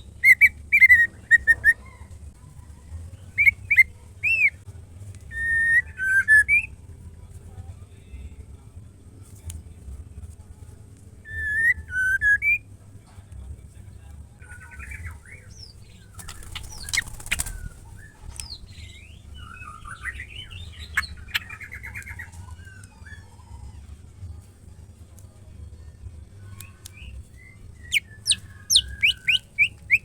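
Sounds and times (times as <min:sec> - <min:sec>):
steady low hum: 0:00.0 - 0:30.0
bird chattering rattles: 0:16.2 - 0:18.6
bird whistled notes: 0:27.4 - 0:30.0.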